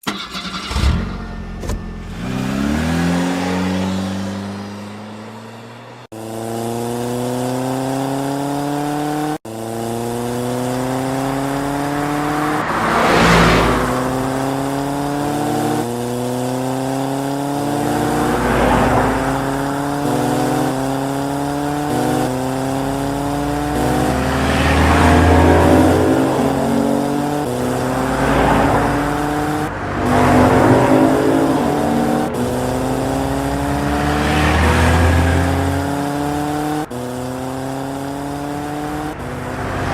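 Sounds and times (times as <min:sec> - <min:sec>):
engine tone climbing through gears: 0:00.0 - 0:39.9
cars whooshing past: 0:02.0 - 0:06.0, 0:10.9 - 0:16.1, 0:17.5 - 0:37.2, 0:38.2 - 0:39.9.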